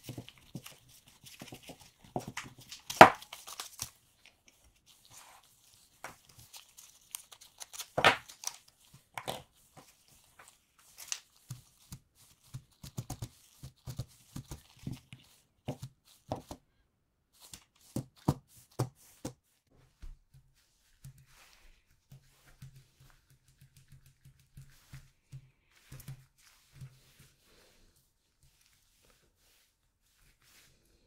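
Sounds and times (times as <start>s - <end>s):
packaging rustling and tearing: 6.2s - 9.4s.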